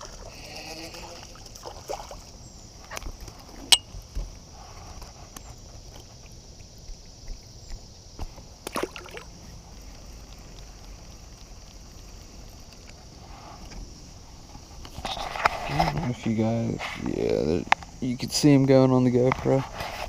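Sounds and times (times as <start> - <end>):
steady high hiss: 0.0 - 20.0.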